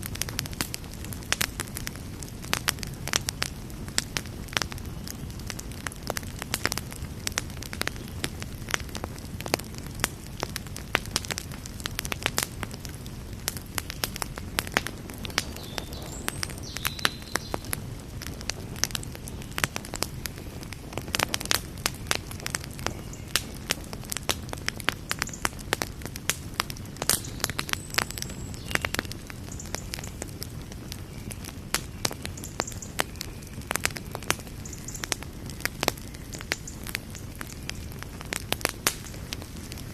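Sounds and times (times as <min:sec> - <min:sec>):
campfire crackles and pops: 0:00.0 - 0:39.9
low rumble of flames: 0:00.0 - 0:39.9.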